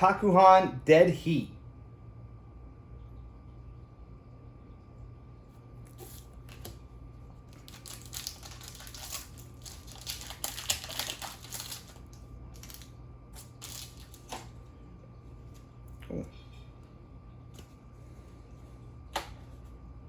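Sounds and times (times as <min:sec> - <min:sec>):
foil wrapper tearing and crinkling: 0:07.5 - 0:14.5.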